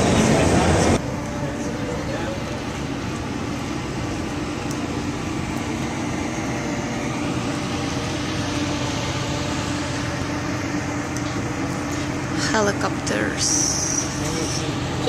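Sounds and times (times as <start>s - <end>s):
ventilation fans humming: 0.0s - 15.0s.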